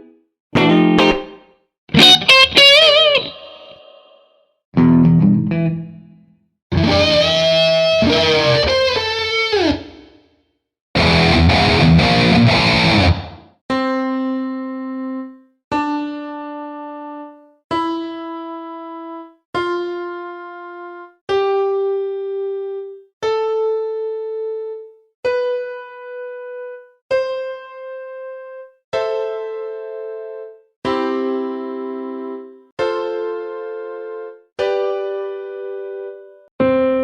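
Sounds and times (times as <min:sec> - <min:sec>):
distorted electric guitar chord: 0:06.8 - 0:09.1, 0:11.0 - 0:13.3.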